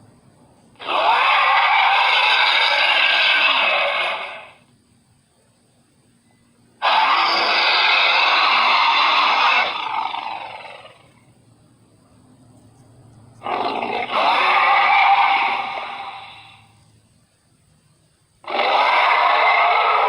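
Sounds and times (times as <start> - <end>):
creature roaring: 0.8 - 4.6, 6.8 - 11.1, 13.4 - 16.6, 18.4 - 20.0.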